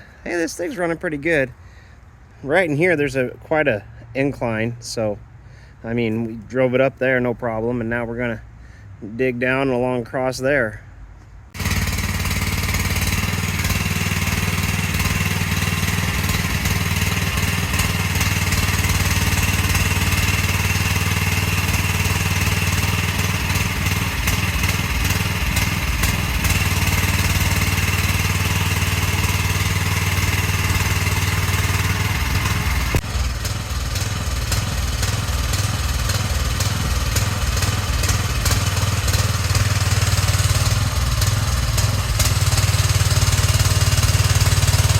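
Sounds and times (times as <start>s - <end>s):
mini excavator engine running: 11.6s - 44.9s.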